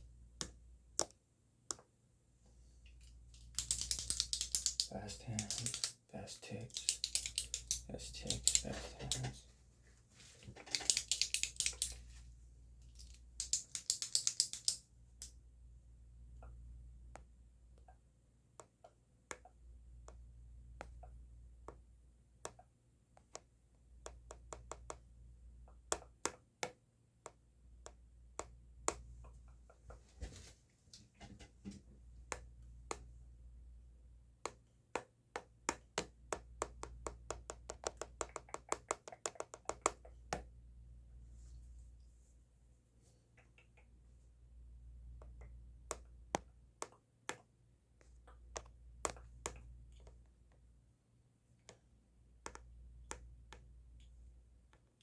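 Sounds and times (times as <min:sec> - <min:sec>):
pen clicking: 0:03.4 - 0:05.9, 0:06.7 - 0:09.2, 0:10.7 - 0:11.9, 0:13.4 - 0:14.8.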